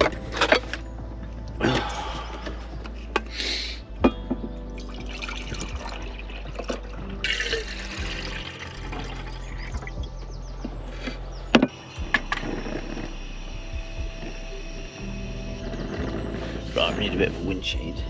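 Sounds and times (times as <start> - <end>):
background music: 0.0 - 18.0
water pouring: 4.8 - 10.1.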